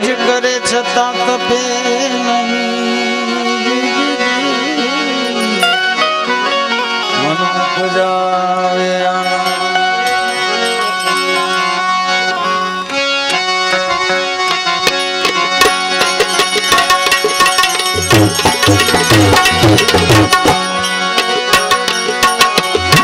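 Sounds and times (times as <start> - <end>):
harmonium holding notes: 0.0 - 23.0
tabla drumming: 14.5 - 23.0
deep tabla bass strokes: 17.9 - 20.7, 22.7 - 23.0.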